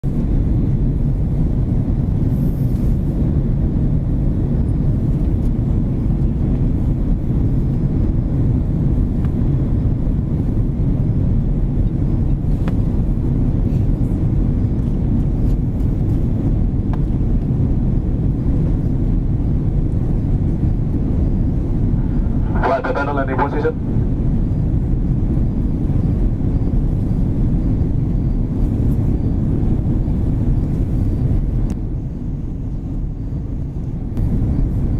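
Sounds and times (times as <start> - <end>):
airplane cabin engine drone: 0.0 - 34.9.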